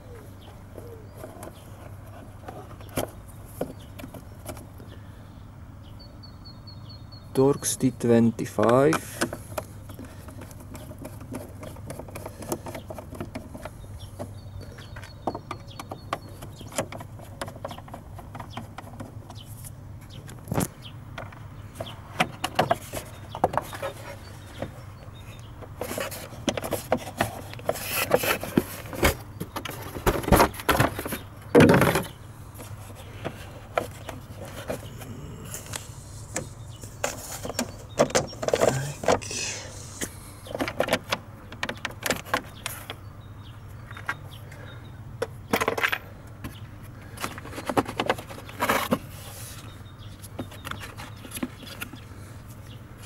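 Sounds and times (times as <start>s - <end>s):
tools and parts clinking: 45.2s - 46.1s.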